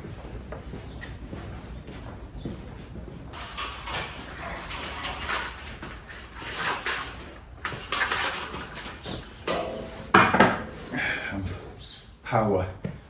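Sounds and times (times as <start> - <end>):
tools scraping and clattering: 3.3 - 11.6.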